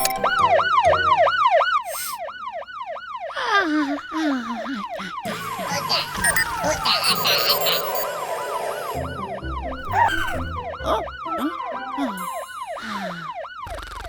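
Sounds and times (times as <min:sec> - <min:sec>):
cartoon siren wail: 0:00.0 - 0:14.0
lower tone sliding down: 0:08.0 - 0:12.1.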